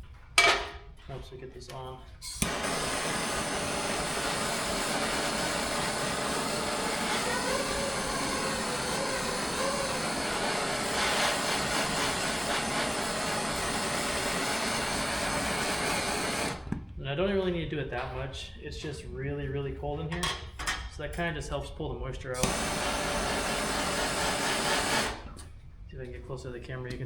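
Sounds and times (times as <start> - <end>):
gas torch flame hissing: 2.2 - 16.8, 22.4 - 25.5.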